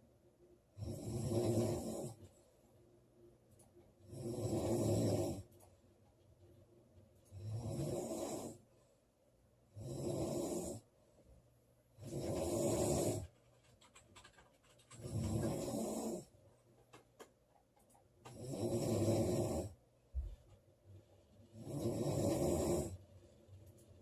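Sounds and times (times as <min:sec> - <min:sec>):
woman snoring: 0:00.8 - 0:02.2, 0:04.1 - 0:05.5, 0:07.4 - 0:08.6, 0:09.8 - 0:10.8, 0:12.0 - 0:13.3, 0:15.0 - 0:16.3, 0:18.3 - 0:19.7, 0:21.6 - 0:23.0
faint clicks: 0:13.3 - 0:15.7.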